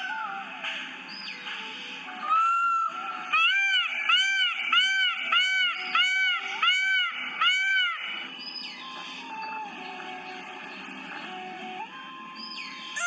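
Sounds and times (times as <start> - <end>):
background music: 0.0 - 13.0
peacock calling: 2.2 - 9.8.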